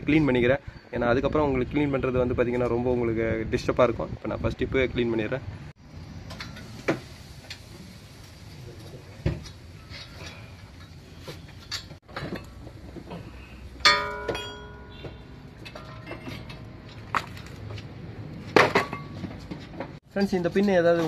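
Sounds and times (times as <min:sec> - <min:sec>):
metal tools clinking: 0:09.4 - 0:13.2, 0:13.8 - 0:17.5
sharp ringing metal clang: 0:13.8 - 0:16.4.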